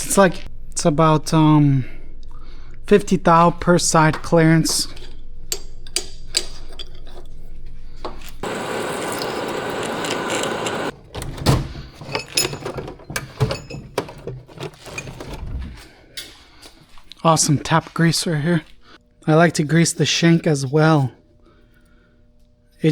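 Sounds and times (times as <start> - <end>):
low machine hum: 0.0 - 22.9
metal tools clicking and knocking: 4.1 - 7.4, 12.0 - 15.3.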